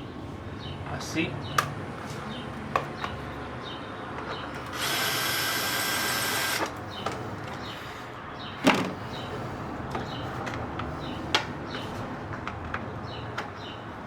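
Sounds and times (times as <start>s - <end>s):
power drill running: 4.5s - 7.1s.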